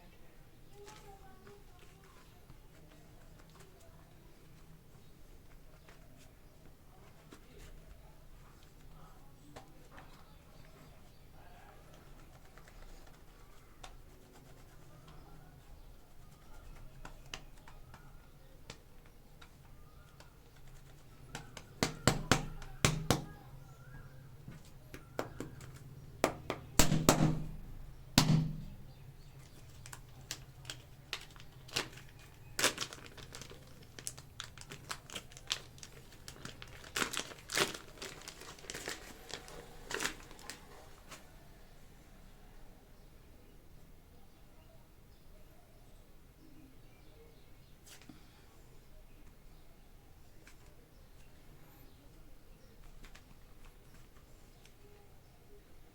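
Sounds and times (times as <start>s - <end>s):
sharp clicks and taps: 18.7s - 23.4s, 24.5s - 31.9s
plastic wrapping crinkling: 19.4s - 41.4s.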